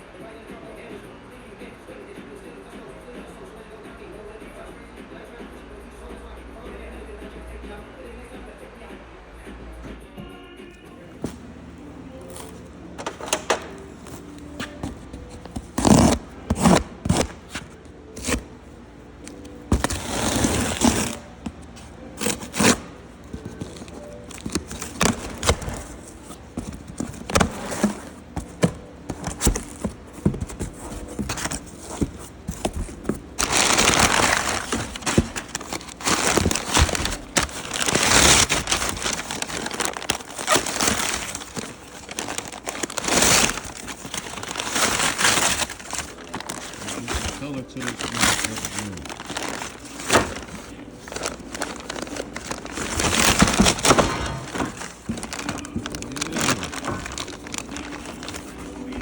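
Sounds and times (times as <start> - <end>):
packaging crinkling and scraping: 11.2 - 59.0
knocks and thuds of handled parts: 23.3 - 47.4.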